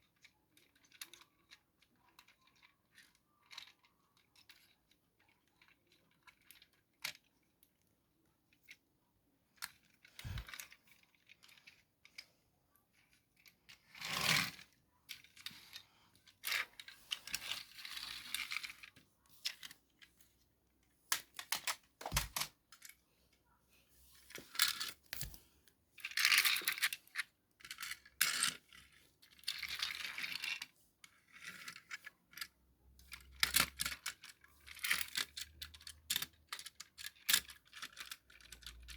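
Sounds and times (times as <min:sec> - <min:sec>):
toy and packaging clicks and taps: 0:21.1 - 0:22.9.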